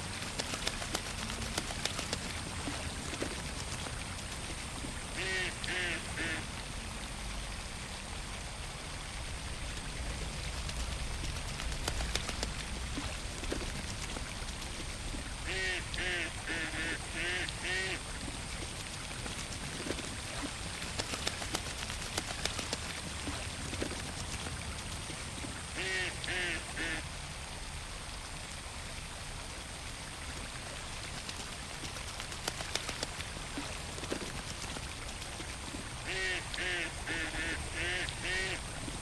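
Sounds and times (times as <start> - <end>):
small splashes and drips: 0.0 - 39.0
watery background: 0.0 - 39.0
ducks quacking: 5.2 - 6.4, 15.5 - 18.0, 25.8 - 27.0, 36.1 - 38.7.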